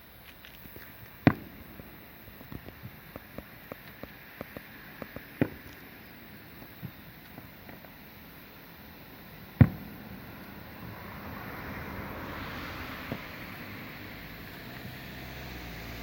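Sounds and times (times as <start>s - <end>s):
firework crackling pops: 0.0s - 16.0s
loud firework bangs: 0.7s - 8.5s, 9.2s - 15.0s.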